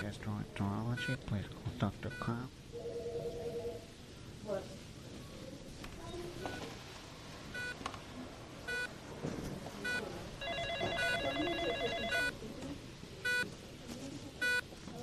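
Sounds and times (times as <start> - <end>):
faint background murmur: 0.0 - 15.0
telephone ringing with pulsing trill: 9.8 - 12.4.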